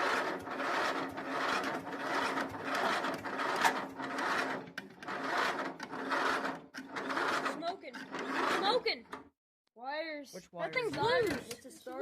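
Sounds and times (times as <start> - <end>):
electric starter cranking engine: 0.0 - 9.3.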